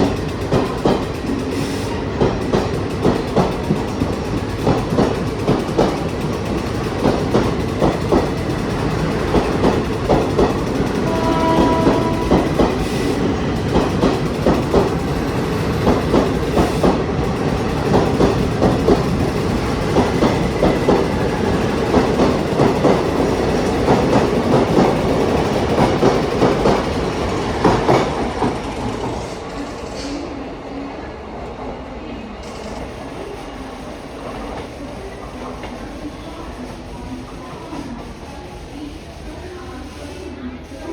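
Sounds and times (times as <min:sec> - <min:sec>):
train wheels clacking over rail joints: 0:00.0 - 0:30.3.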